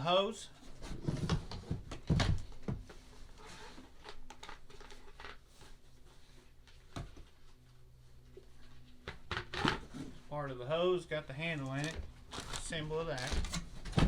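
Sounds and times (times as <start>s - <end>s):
packaging rustling in cardboard box: 11.7s - 14.0s.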